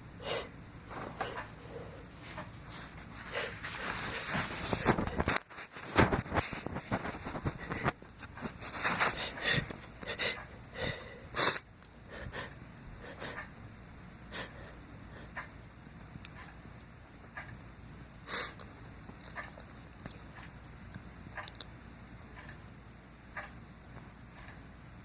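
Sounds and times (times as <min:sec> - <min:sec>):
person sniffing: 0:07.4 - 0:13.5, 0:18.3 - 0:18.6
snorting gasping breaths: 0:08.8 - 0:13.5, 0:14.3 - 0:15.5, 0:18.3 - 0:19.7.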